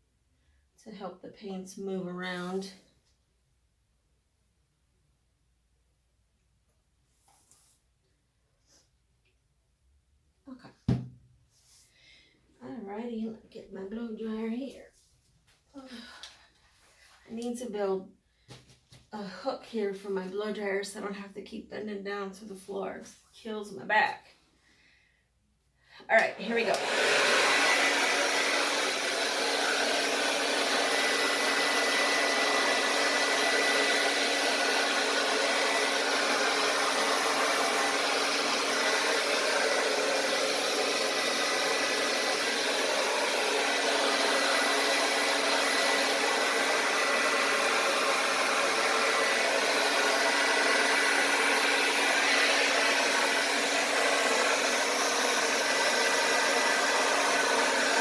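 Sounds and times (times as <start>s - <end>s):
blow dryer running: 26.2s - 58.0s.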